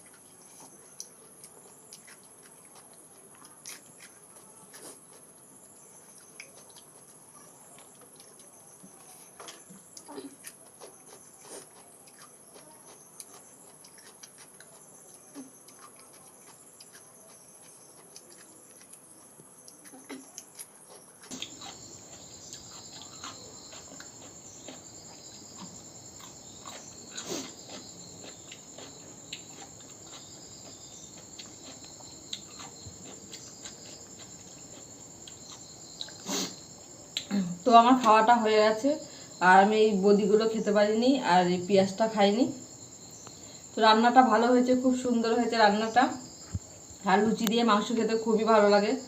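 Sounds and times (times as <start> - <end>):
person chewing: 0.0 - 5.4, 6.0 - 37.3.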